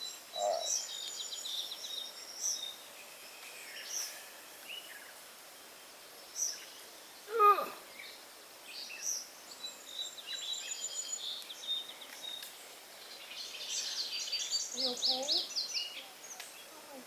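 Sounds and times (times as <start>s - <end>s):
outdoor background noise: 0.0s - 17.0s
small birds chirping: 0.0s - 17.0s
person's short cry: 7.3s - 7.8s.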